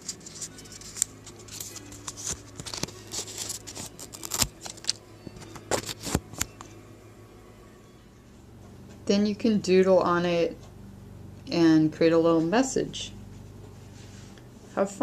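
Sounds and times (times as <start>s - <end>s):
scissors snipping paper: 0.0s - 5.0s.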